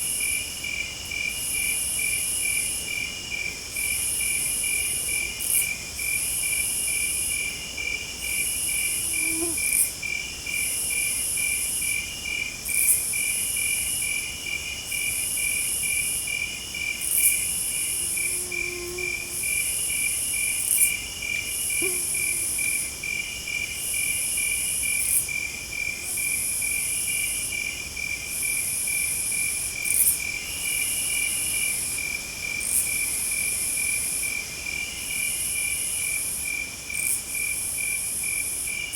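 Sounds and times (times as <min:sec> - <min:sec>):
crickets chirping: 0:00.0 - 0:38.9
intermittent insect trill: 0:00.0 - 0:38.9.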